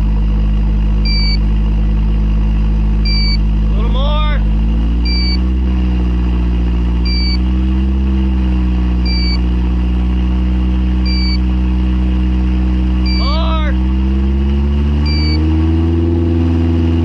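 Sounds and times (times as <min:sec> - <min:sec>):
car engine idling: 0:00.0 - 0:17.0
detector alarm beeps: 0:01.0 - 0:01.4, 0:03.0 - 0:03.4, 0:05.0 - 0:05.4, 0:07.0 - 0:07.5, 0:09.0 - 0:09.4, 0:11.0 - 0:11.4, 0:13.0 - 0:13.6, 0:15.0 - 0:15.5.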